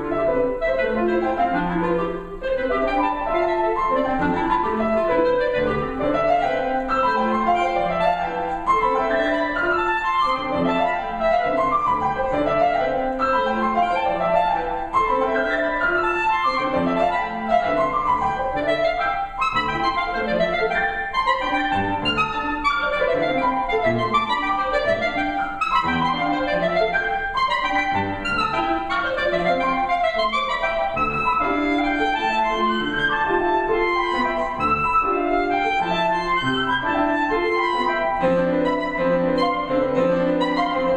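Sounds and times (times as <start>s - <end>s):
clarinet: 0.0s - 40.9s
piano: 0.0s - 40.9s.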